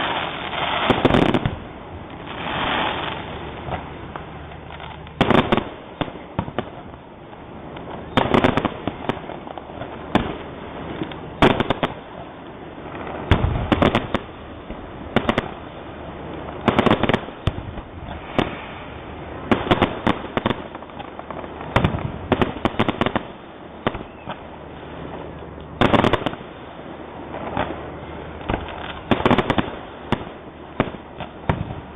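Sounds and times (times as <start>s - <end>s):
firework shell bursts and booms: 0.0s - 1.7s, 5.2s - 6.8s, 8.0s - 9.4s, 13.0s - 15.6s, 16.6s - 24.4s, 25.8s - 26.5s, 28.4s - 31.9s
fireworks crackling: 0.0s - 31.9s.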